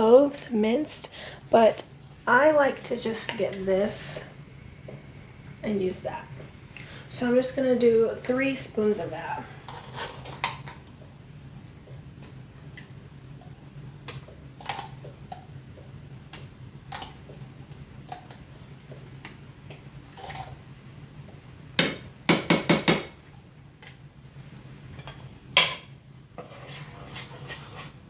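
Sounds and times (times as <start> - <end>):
faint low hum: 0.0 - 22.3.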